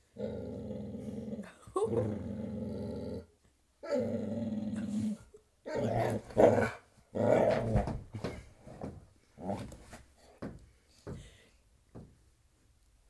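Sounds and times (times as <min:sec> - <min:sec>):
dog growling: 0:00.1 - 0:07.9.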